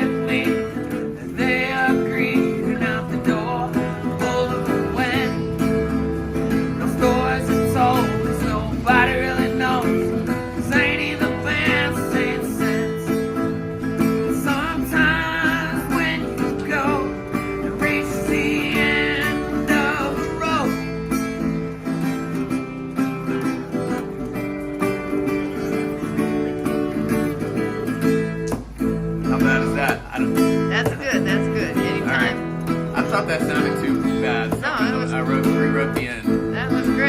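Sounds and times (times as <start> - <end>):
person singing: 0.0 - 21.0
acoustic guitar strumming: 0.0 - 37.0.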